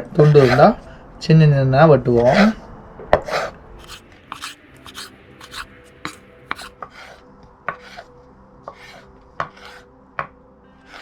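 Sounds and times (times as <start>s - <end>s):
knife chopping on board: 3.4s - 6.7s.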